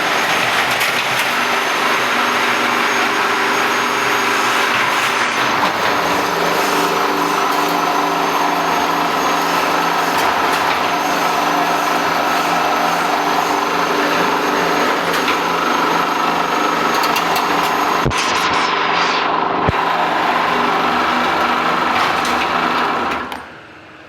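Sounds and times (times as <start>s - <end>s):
machine motor hum: 0.0s - 24.0s.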